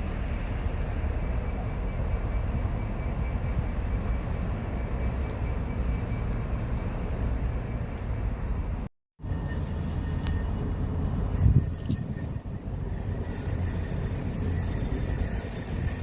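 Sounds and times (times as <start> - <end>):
train rumbling past: 0.0 - 16.0
train wheel squeals: 9.2 - 16.0.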